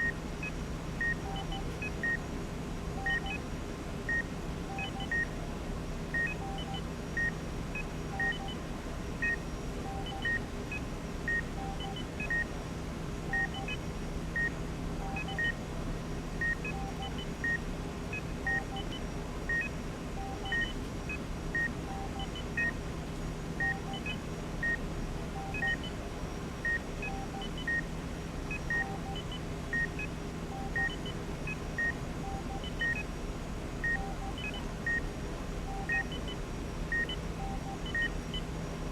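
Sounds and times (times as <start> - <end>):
faint paired beeps: 0.0 - 2.3, 3.0 - 3.4, 4.1 - 5.3, 6.2 - 8.6, 9.2 - 12.5, 13.3 - 15.6, 16.4 - 22.8, 23.6 - 26.0, 26.6 - 27.9, 28.5 - 33.1, 33.8 - 38.5
steady low hum: 0.0 - 38.9
electronic beeps: 3.0 - 3.4, 8.2 - 8.6, 15.1 - 15.6, 18.5 - 20.7, 25.4 - 25.9, 28.5 - 30.0, 30.6 - 33.1, 33.8 - 35.0, 35.7 - 36.3, 36.9 - 38.4.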